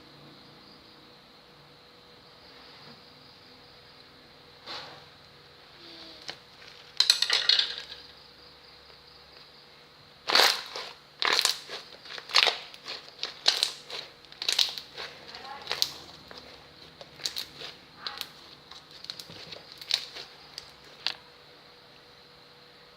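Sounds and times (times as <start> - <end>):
slime popping and squishing: 10.2 - 21.2.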